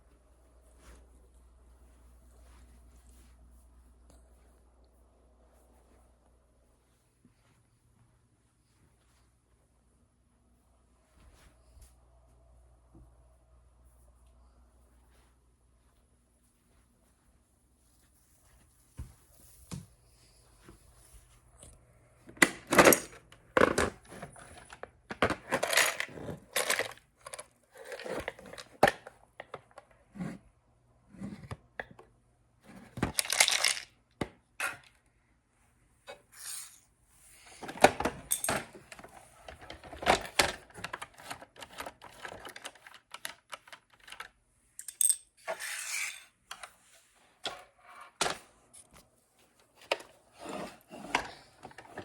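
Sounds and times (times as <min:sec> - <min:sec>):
plastic bricks clattering: 0:22.4 - 0:27.4, 0:32.9 - 0:33.9.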